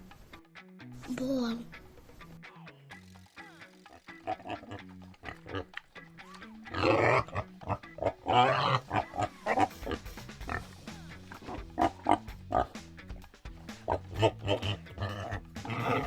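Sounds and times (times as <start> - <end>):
background music with bass line: 0.0 - 16.0
wild boar calls: 3.8 - 16.0.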